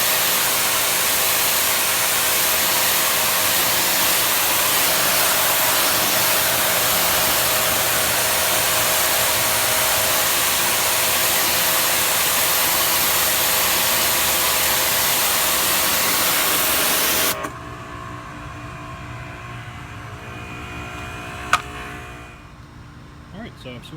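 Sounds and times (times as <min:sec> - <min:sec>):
pressure washer spray hiss: 0:00.0 - 0:17.4
motor and pump hum: 0:00.0 - 0:23.0.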